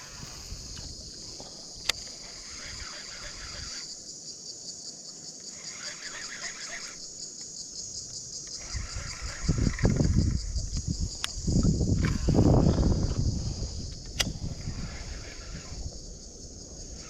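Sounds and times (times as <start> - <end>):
insects chirring: 0.0 - 17.0
sharp click: 13.9 - 14.4.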